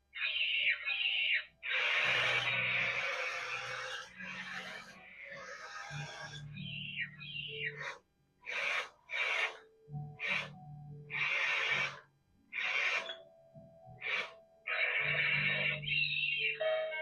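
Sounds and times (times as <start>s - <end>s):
toy robot electronic hiss bursts: 1.6s - 6.4s, 11.1s - 12.0s, 14.0s - 15.8s.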